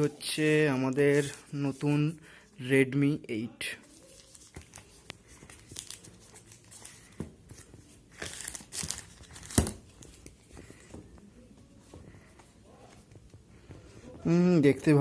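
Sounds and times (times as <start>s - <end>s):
plastic packaging crinkling: 3.8s - 10.3s.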